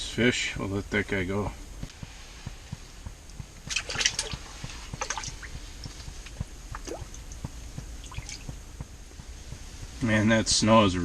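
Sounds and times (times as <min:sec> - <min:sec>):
wind rumble on microphone: 0:00.0 - 0:11.0
water splashes and drips: 0:03.6 - 0:08.6.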